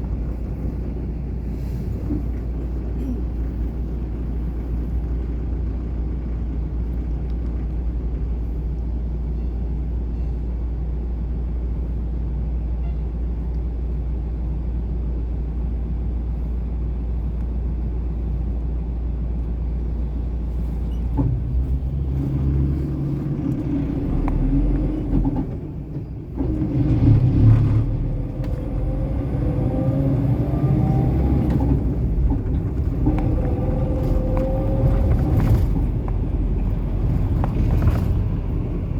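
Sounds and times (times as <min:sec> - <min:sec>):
car engine accelerating: 0:20.6 - 0:38.9.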